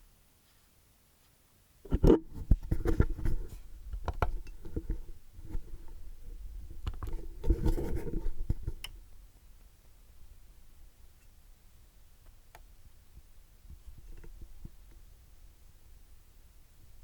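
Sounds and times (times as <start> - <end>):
handling knocks and scrapes: 1.9 - 8.8.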